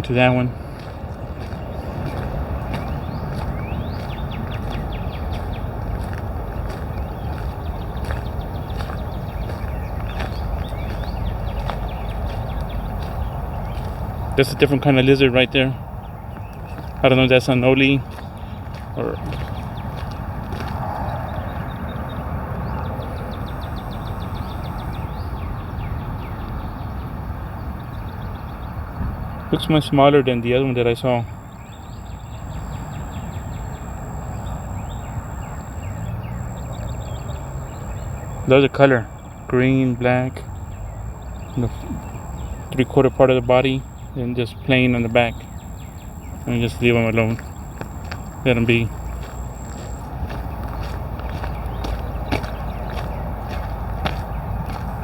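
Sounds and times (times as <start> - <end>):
bird calling: 0.0 - 27.0, 27.8 - 55.0
steady low rumble: 0.0 - 55.0
wind buffeting microphone: 0.0 - 55.0
songbird trilling and whistling: 0.7 - 14.6.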